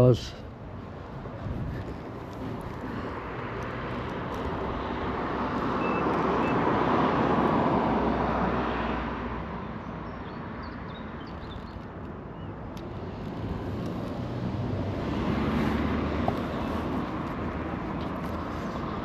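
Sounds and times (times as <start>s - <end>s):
vehicle driving past: 13.3s - 16.7s.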